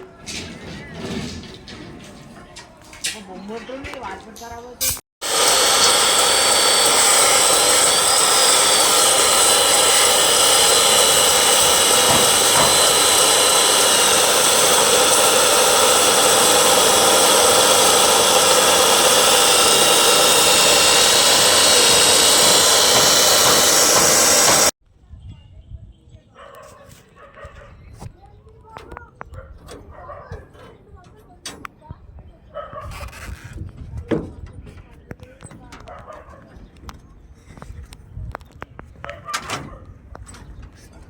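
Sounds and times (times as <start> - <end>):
power tool whining: 5.2 - 24.8.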